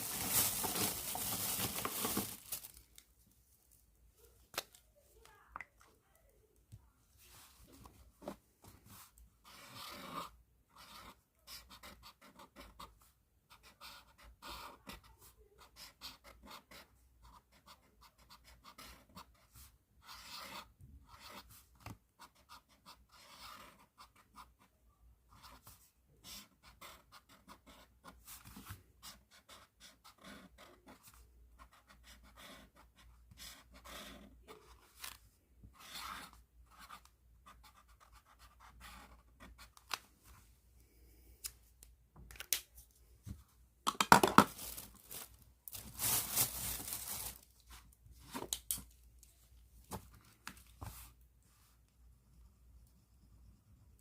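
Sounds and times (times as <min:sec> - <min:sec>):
pen scratching on paper: 0:09.0 - 0:21.6, 0:22.2 - 0:24.7, 0:25.3 - 0:35.0, 0:35.7 - 0:39.8.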